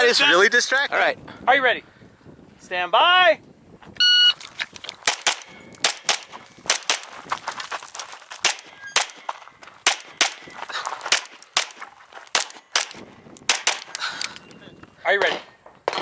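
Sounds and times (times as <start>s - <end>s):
pistol shots: 5.0s - 7.2s, 8.4s - 9.2s, 9.8s - 14.0s.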